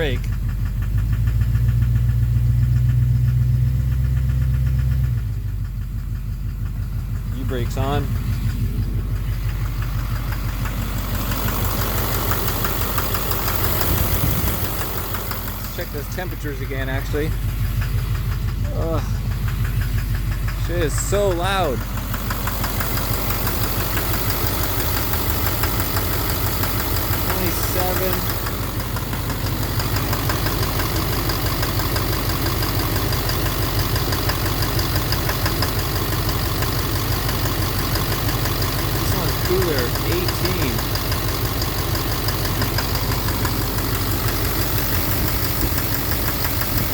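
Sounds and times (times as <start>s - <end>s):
diesel engine rumble: 0.0s - 46.9s
rapid engine knocking tick: 0.0s - 46.9s
person speaking: 18.6s - 19.2s, 20.6s - 21.9s, 27.2s - 28.4s, 39.0s - 40.9s.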